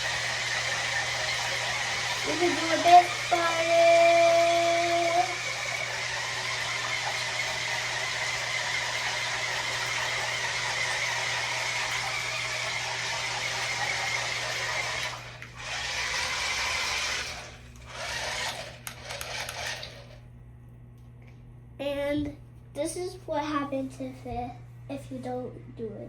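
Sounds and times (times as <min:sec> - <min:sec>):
toy car electric motors whirring: 0:00.0 - 0:20.2.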